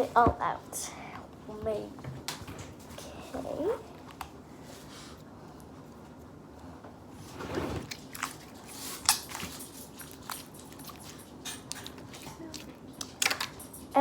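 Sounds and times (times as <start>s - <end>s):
slime squelching: 7.8s - 13.5s.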